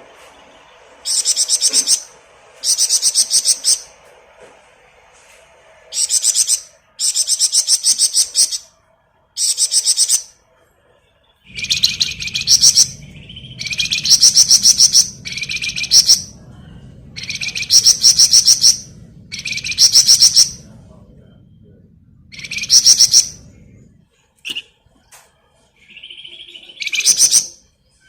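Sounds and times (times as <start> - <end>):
low steady hum: 0.0 - 28.0
bird singing fast high trills: 1.0 - 3.9, 5.9 - 8.7, 11.5 - 16.4, 17.2 - 20.7, 22.3 - 23.4, 25.8 - 27.6.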